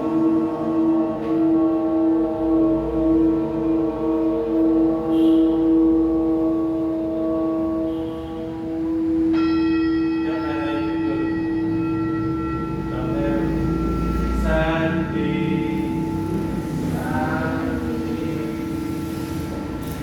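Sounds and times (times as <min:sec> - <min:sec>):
low singing bowl humming: 0:00.0 - 0:20.0
higher singing bowl struck: 0:09.2 - 0:20.0.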